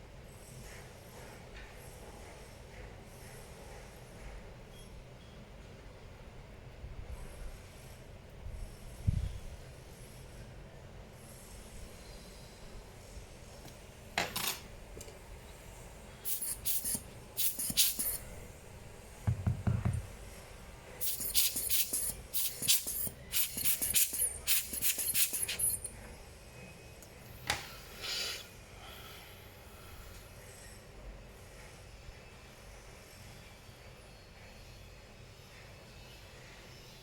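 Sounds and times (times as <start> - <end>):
small tools clicking and scraping: 16.3 - 18.2, 21.0 - 26.0.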